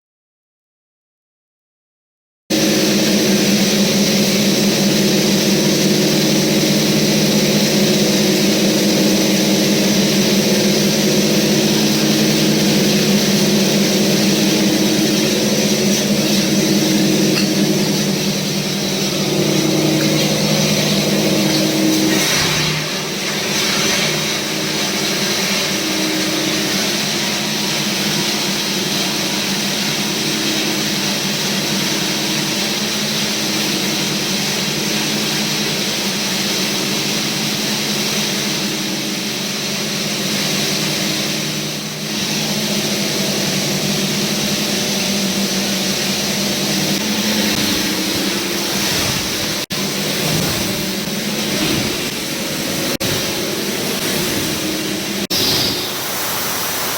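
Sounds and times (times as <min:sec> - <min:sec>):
rush of air from blower: 0:02.5 - 0:33.6, 0:45.6 - 0:56.9
grinder motor hum: 0:02.5 - 0:56.8.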